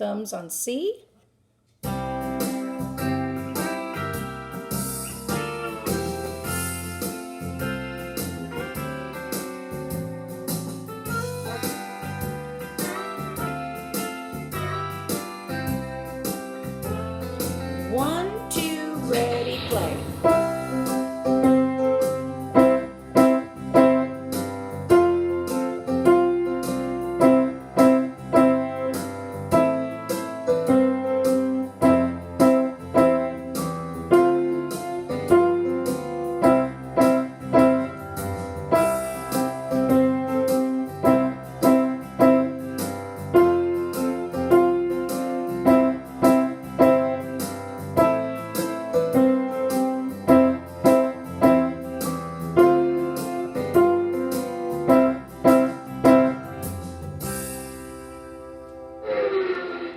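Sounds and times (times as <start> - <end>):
backing accompaniment: 1.8 - 42.7
keyboard playing simple piece: 1.8 - 59.9.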